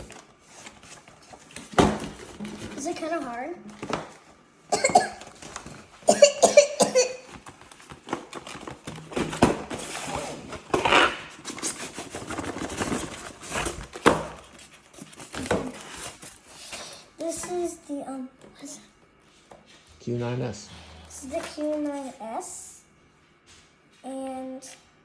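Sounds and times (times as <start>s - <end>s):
packaging rustling and tapping: 3.7s - 4.2s, 5.2s - 5.9s, 7.2s - 16.4s.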